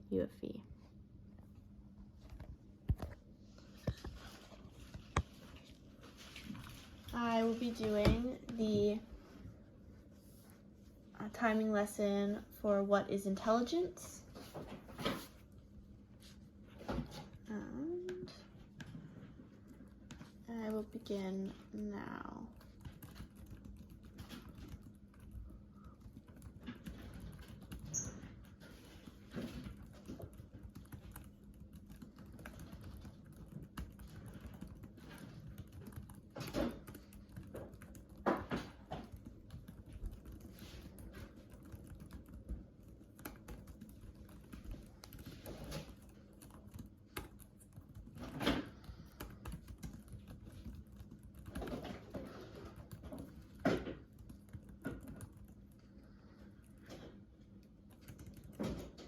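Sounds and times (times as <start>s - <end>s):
typing on keyboard: 19.7s - 56.8s, 57.6s - 59.0s.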